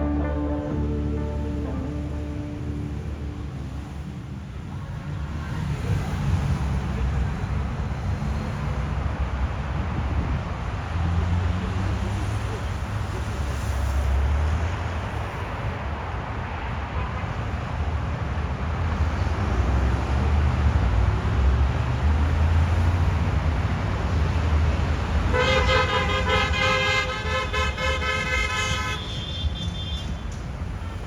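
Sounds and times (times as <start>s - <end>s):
vehicle horn blaring: 0.0s - 3.0s, 25.3s - 30.2s
motorcycle engines rumbling: 0.0s - 15.4s, 18.8s - 27.6s.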